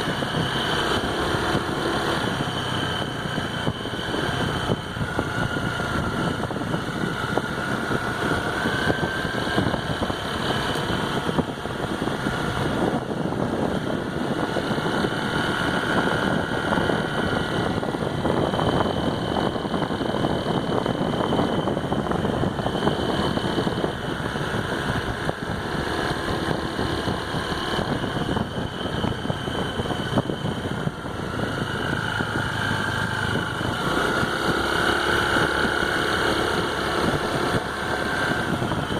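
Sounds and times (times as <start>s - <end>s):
scooter engine running: 0.0s - 38.9s.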